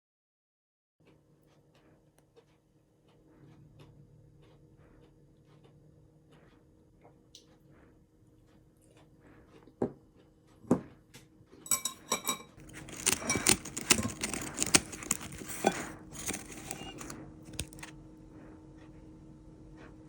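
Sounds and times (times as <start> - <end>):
dog crunching fried batter: 12.6 - 17.9.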